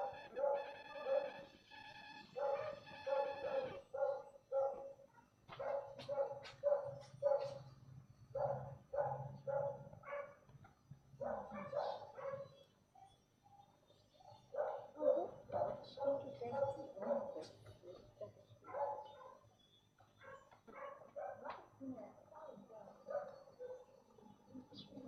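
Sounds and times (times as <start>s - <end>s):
dog yapping: 0.0s - 1.4s, 2.4s - 4.9s, 5.6s - 7.6s.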